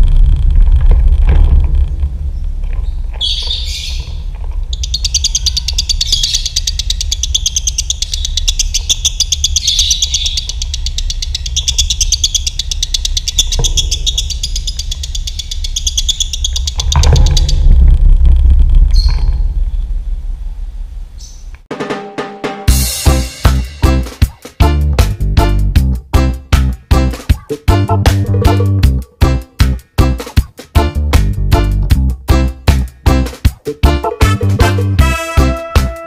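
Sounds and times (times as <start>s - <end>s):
steady low rumble: 0.0s - 21.7s, 22.8s - 30.2s, 30.8s - 33.3s
lovebird chattering trill: 3.2s - 17.6s, 27.0s - 28.8s.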